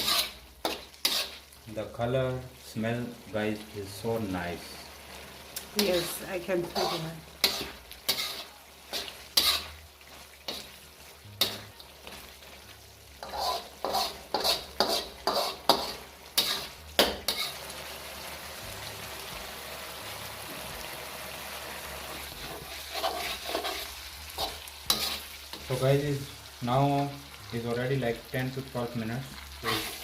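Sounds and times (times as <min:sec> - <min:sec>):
utensil scraping and knocking pan: 0:00.0 - 0:01.4, 0:06.7 - 0:09.7, 0:13.2 - 0:17.5, 0:22.4 - 0:25.7
meat sizzling in oil: 0:00.0 - 0:30.0.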